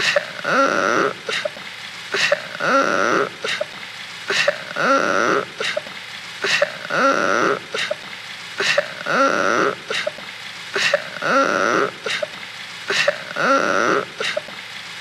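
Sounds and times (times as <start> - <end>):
cartoon sobbing wail: 11.2 - 12.3.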